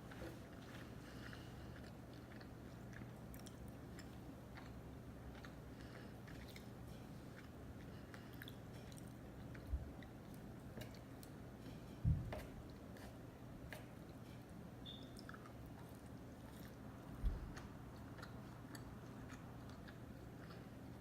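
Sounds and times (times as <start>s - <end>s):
close chewing: 0.0s - 11.5s, 14.9s - 21.0s.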